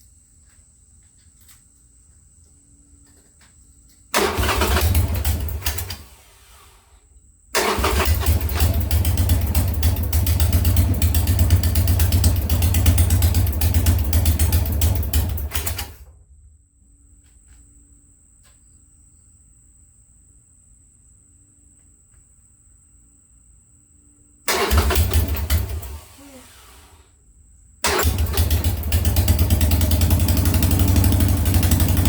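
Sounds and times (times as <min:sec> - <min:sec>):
motorcycle starter cranking engine: 0:04.1 - 0:06.8, 0:07.6 - 0:16.2, 0:24.5 - 0:27.1, 0:27.8 - 0:32.0.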